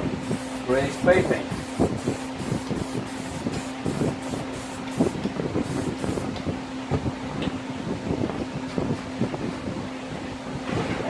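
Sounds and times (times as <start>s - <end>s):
spray can hissing puffs: 0.2s - 6.3s.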